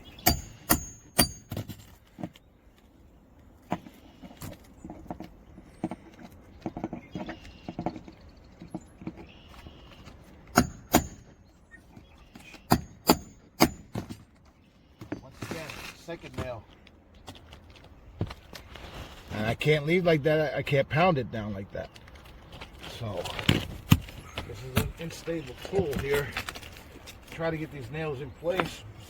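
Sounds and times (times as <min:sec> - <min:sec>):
hammer striking metal: 0:00.2 - 0:01.7, 0:10.6 - 0:11.3, 0:12.7 - 0:14.0.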